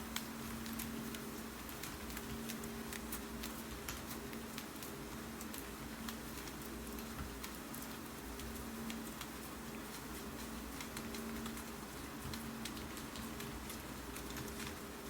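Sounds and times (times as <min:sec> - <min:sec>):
typing on computer keyboard: 0:10.4 - 0:14.9.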